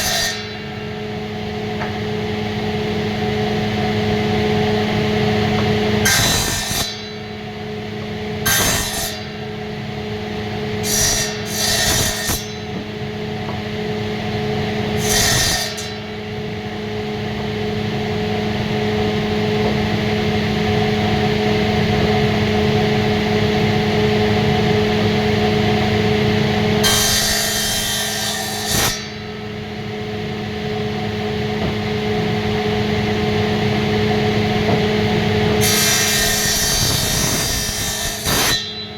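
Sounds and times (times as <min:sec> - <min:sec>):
power tool cutting wood: 0:06.0 - 0:07.1, 0:08.4 - 0:09.2, 0:10.8 - 0:12.6, 0:26.8 - 0:29.2, 0:35.6 - 0:38.8.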